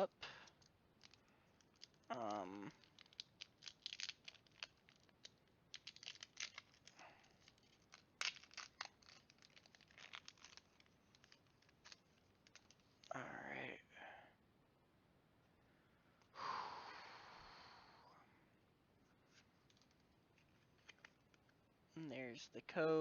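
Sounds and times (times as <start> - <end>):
foil pack crinkling: 0.3 - 13.1, 19.6 - 21.4.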